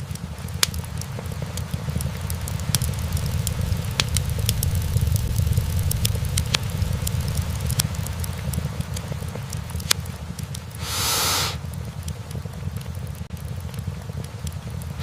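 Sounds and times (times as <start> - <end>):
fire low rumble: 0.0 - 15.0
logs crackling and popping: 0.0 - 15.0.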